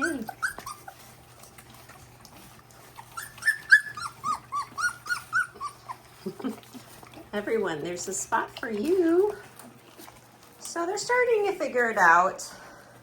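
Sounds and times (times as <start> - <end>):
puppy whining: 0.0 - 7.5.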